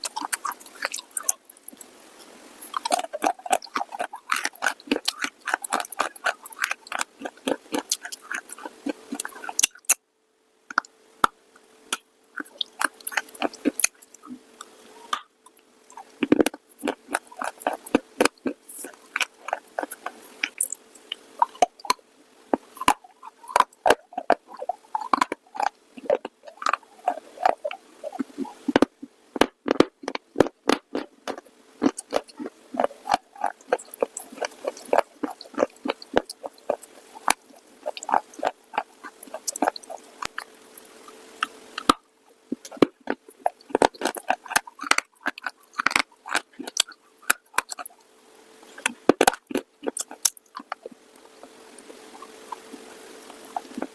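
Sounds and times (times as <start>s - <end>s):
faint steady hum: 0.0s - 53.9s.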